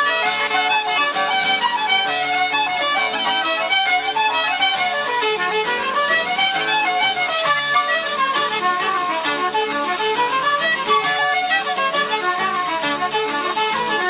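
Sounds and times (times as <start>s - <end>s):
fiddle melody: 0.0s - 14.0s
folk band playing jigs: 0.0s - 14.0s.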